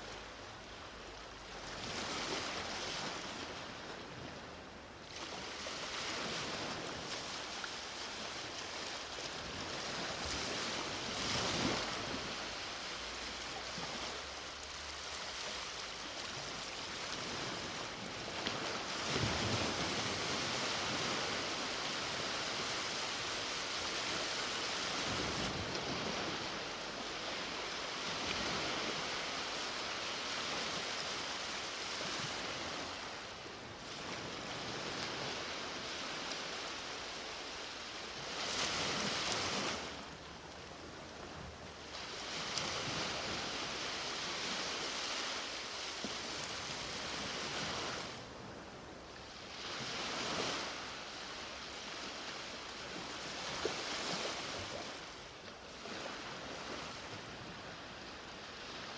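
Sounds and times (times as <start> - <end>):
ocean waves breaking: 5.1 - 48.6.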